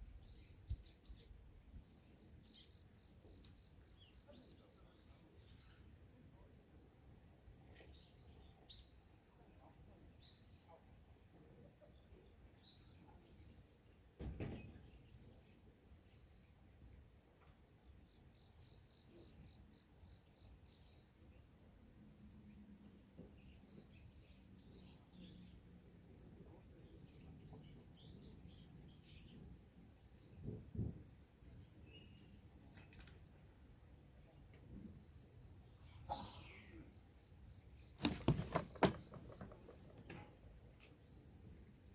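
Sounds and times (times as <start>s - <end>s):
crickets trilling: 0.0s - 41.9s
dull thumps: 38.0s - 40.2s.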